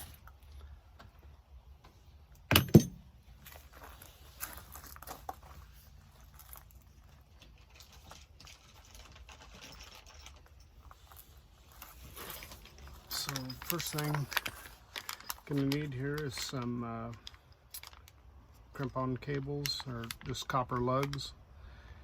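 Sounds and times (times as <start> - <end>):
rustling: 3.3 - 18.2
metal parts clicking: 12.2 - 16.3.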